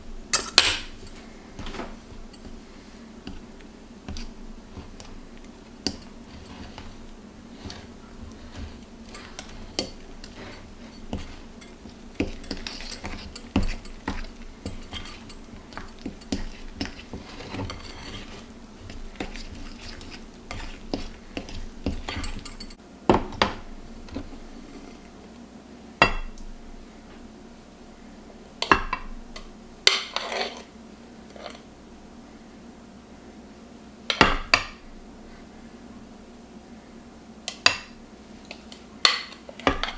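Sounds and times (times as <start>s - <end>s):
dishes and utensils clinking: 0.3s - 24.4s.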